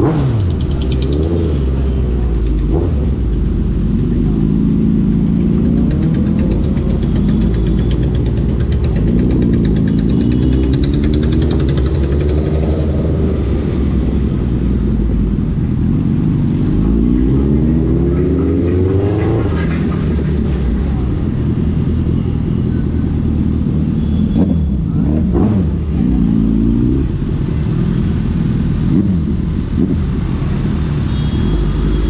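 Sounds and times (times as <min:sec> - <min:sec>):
motorcycle engine accelerating: 0:02.5 - 0:22.2.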